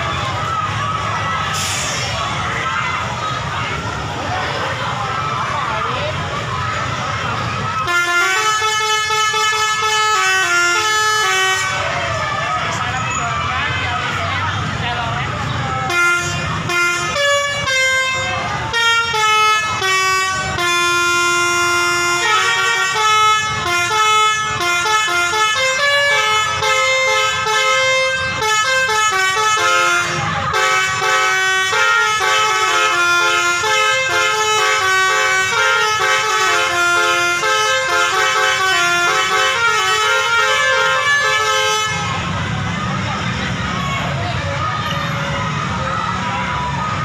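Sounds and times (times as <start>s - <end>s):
multi-tone air horn playing a tune: 7.8s - 11.9s, 15.8s - 42.2s.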